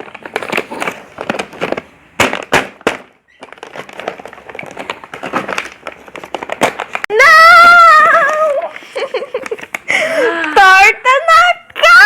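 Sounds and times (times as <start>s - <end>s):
package crinkling and tearing: 3.3s - 7.1s.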